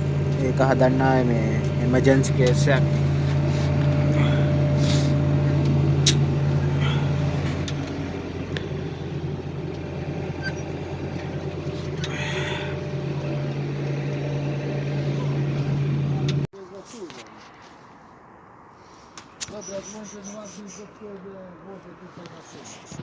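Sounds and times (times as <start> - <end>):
diesel engine running: 0.0 - 16.5.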